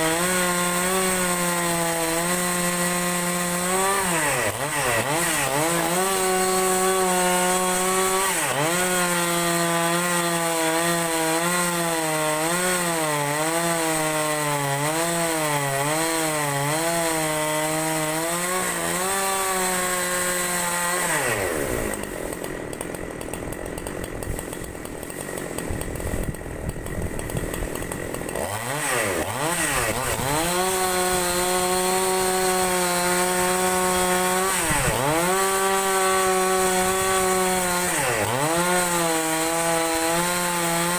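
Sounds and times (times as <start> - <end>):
chainsaw cutting log: 0.0 - 40.9.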